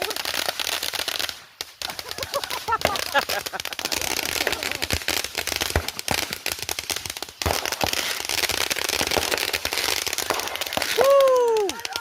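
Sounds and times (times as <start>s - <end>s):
firecrackers popping: 0.0s - 12.0s.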